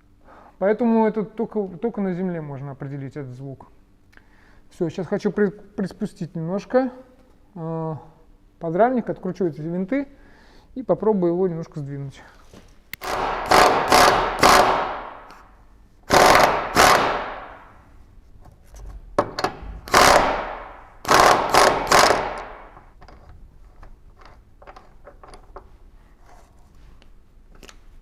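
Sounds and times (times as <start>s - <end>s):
impact wrench rattling bursts: 13.0s - 15.4s, 16.1s - 17.8s, 19.2s - 23.0s.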